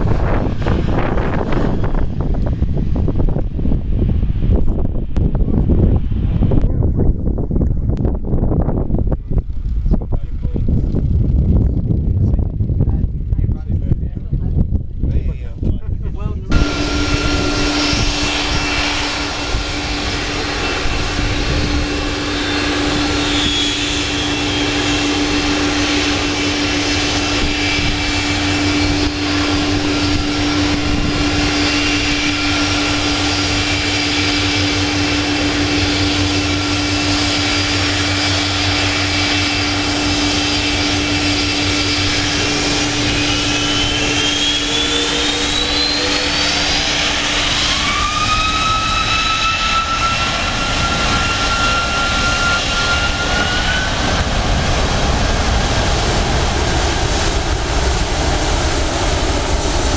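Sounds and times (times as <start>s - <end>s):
jet engines running: 0.0s - 59.9s
high whining tones: 16.3s - 59.9s.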